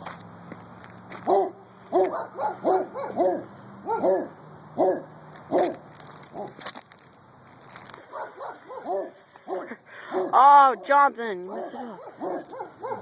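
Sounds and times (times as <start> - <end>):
dogs barking: 1.2 - 6.6, 8.0 - 13.0.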